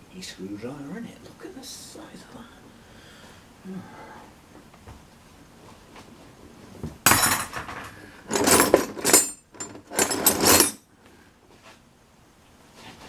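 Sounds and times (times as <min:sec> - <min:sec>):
metal hand tools clattering: 0:07.1 - 0:10.8.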